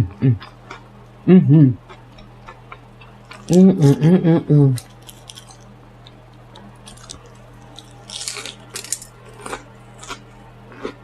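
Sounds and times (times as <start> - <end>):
low steady hum: 0.0 - 11.0
close chewing with mouth clicks: 6.8 - 11.0.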